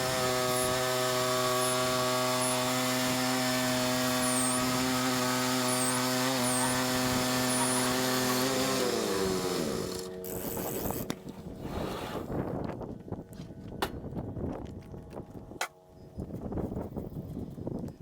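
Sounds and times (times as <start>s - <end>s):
sawmill engine running: 0.0s - 10.6s.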